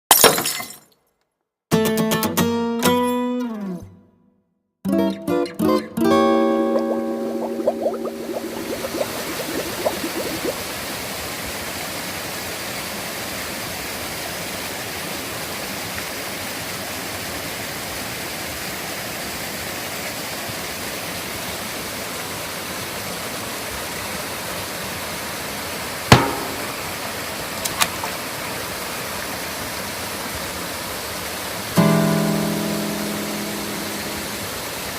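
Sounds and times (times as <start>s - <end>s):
stream running over rocks: 6.5s - 34.9s
sharp knock: 26.1s - 27.0s.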